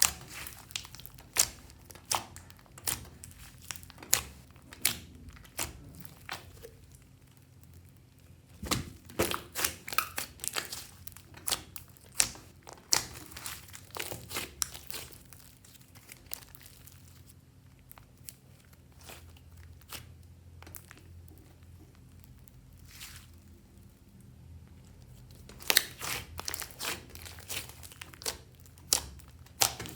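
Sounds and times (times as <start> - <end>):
slime popping and crackling: 0.0 - 17.3, 25.3 - 29.9.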